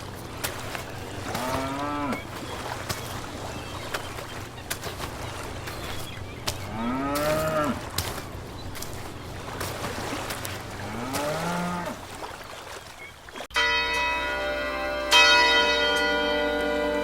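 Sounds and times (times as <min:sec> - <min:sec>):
bell ringing: 0:13.6 - 0:17.0.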